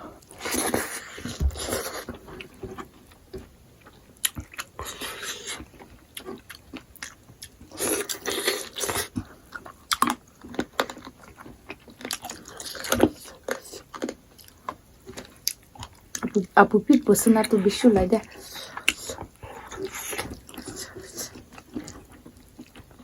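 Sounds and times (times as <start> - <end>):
chewing and biting: 3.8 - 16.4, 17.4 - 23.0.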